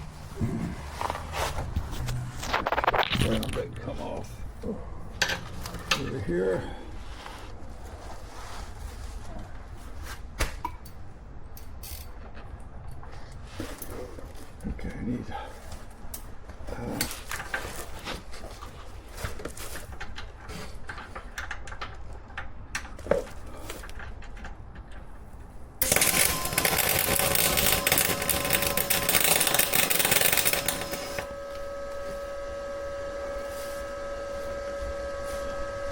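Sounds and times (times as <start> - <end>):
welding arc crackling: 25.8 - 31.4
steady hum with held tones: 25.8 - 35.9.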